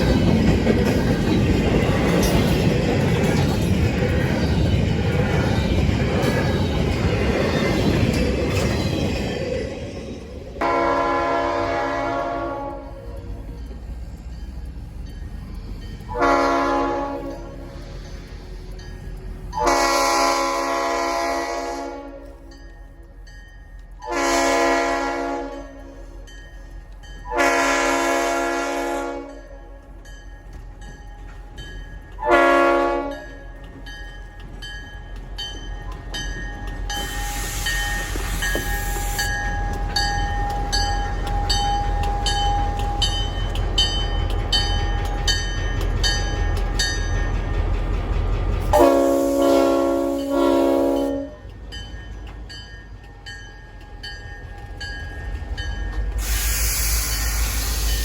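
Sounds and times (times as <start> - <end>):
locomotive engine rumble: 0.0 - 58.0
locomotive horn blasts: 10.6 - 13.0, 16.1 - 17.5, 19.6 - 22.4, 24.0 - 26.0, 27.3 - 29.4, 32.2 - 33.3, 48.7 - 51.4.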